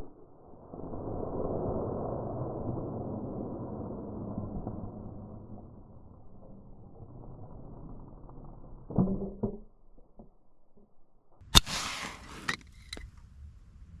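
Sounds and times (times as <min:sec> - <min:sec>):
bb gun firing: 0:11.5 - 0:12.4
hissing noise: 0:11.5 - 0:13.0.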